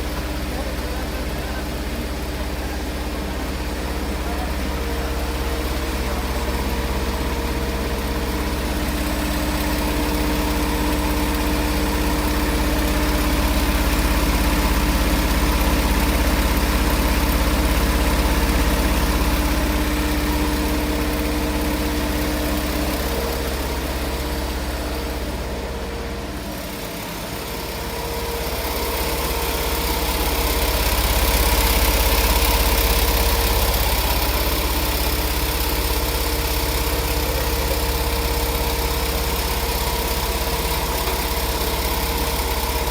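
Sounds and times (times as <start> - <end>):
quilting machine humming: 0.0 - 42.9.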